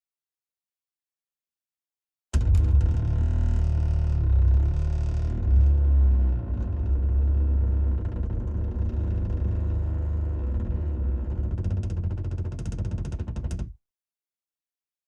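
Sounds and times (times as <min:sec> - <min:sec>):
deep steady rumble: 0:02.4 - 0:12.1.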